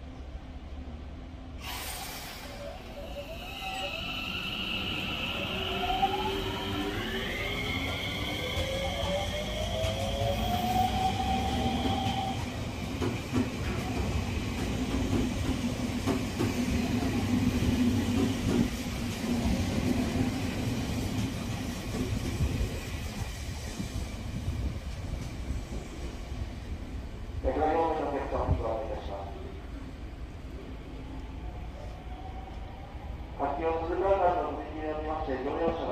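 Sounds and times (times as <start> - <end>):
electric train whine: 1.6 - 28.1
train running noise: 1.6 - 30.8.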